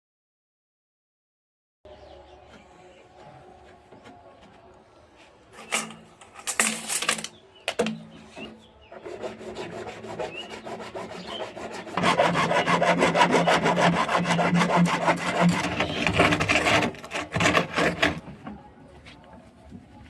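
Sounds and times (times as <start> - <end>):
hand tool rasping plastic pipe: 5.5 - 18.6.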